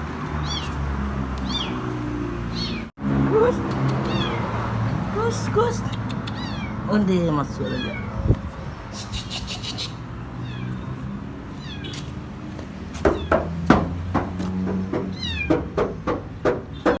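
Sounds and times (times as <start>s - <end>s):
kitten meowing: 0.4s - 0.8s, 1.4s - 1.8s, 2.5s - 2.9s, 3.9s - 4.6s, 6.2s - 11.0s, 11.6s - 12.1s, 15.1s - 15.6s
sharp knocks: 13.0s - 17.0s.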